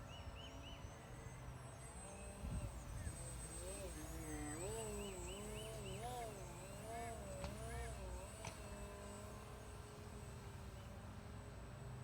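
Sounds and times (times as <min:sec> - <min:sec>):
model airplane motor whining: 0:02.2 - 0:10.8.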